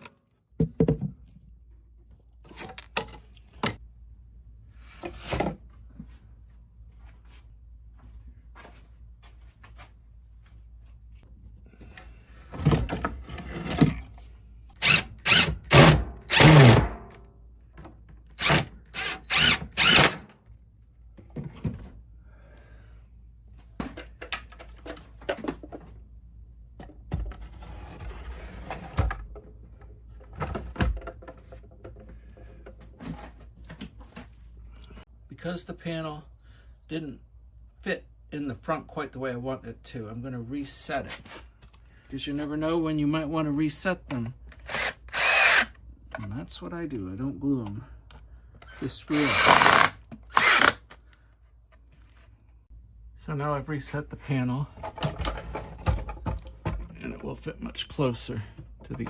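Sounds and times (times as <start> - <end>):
power drill bursts: 14.8 - 16.8, 18.4 - 20.2, 44.6 - 45.7, 49.1 - 50.8.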